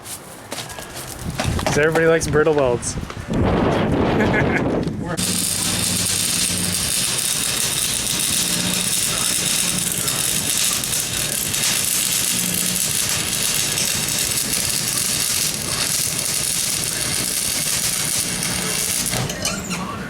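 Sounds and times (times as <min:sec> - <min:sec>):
welding arc sizzling: 0:05.2 - 0:20.0.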